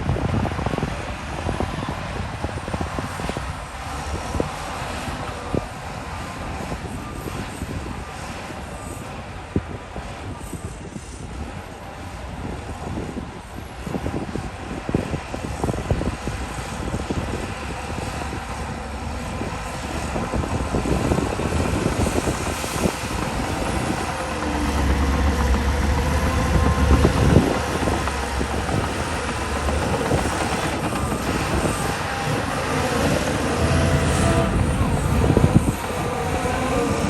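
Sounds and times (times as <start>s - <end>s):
deep diesel engine rumble: 13.8s - 37.0s
machinery clanking and rattling: 16.8s - 37.0s.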